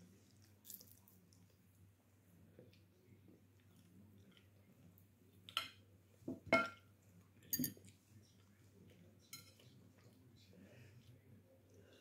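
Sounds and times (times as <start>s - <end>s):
cutlery clinking against a plate: 7.5s - 7.9s, 9.2s - 9.7s.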